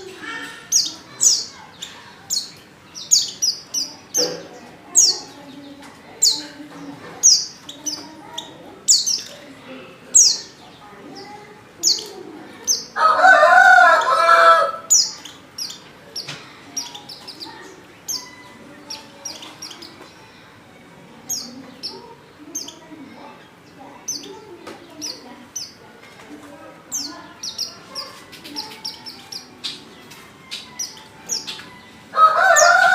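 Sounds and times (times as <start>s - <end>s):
rooster crowing: 13.0s - 14.9s, 32.1s - 32.9s.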